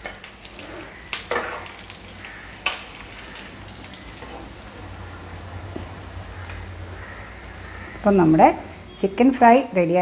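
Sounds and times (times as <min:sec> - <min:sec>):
food sizzling in hot oil: 0:00.0 - 0:09.7.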